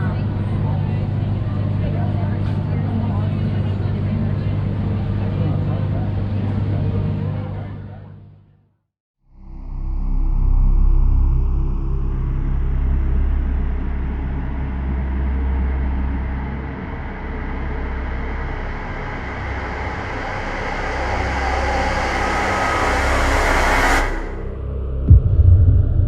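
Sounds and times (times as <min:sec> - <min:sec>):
vehicle low hum: 0:09.6 - 0:26.0
rushing noise: 0:16.8 - 0:26.0.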